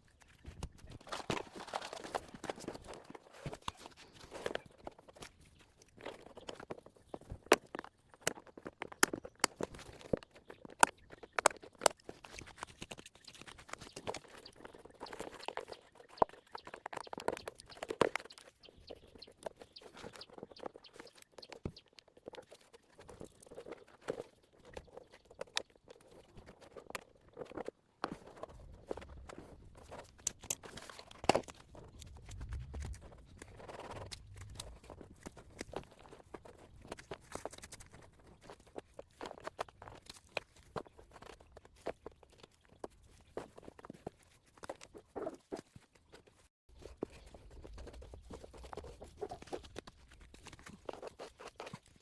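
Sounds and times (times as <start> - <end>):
dry grass rustling and crunching: 1.0 - 5.7, 28.3 - 39.2
sharp clicks and snaps: 29.8 - 36.1.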